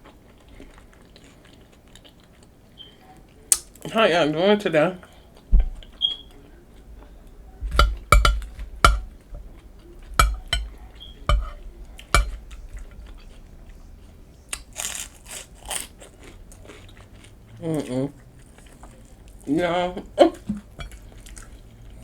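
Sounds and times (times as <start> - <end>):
chips being chewed: 0.0 - 2.6, 12.5 - 19.5
utensil clinking on a plate: 7.0 - 13.5, 20.4 - 21.6.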